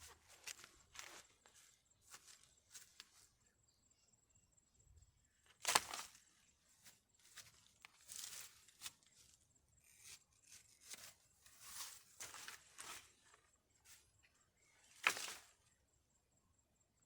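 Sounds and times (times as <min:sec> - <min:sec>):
rustling and crunching: 0:00.0 - 0:03.3, 0:05.5 - 0:14.1, 0:14.8 - 0:15.6.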